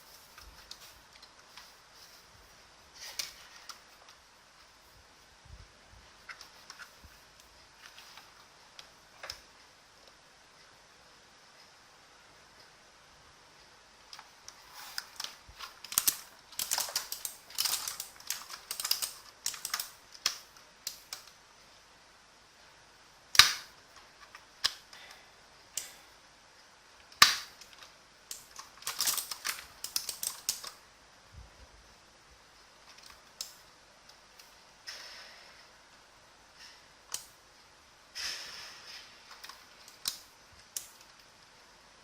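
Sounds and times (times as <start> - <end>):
mechanical keyboard clicks: 15.0 - 21.3, 27.2 - 30.8.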